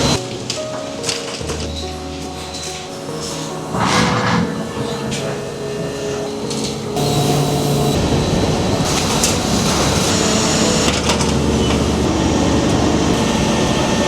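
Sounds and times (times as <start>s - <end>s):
factory machinery clattering: 6.2s - 14.0s.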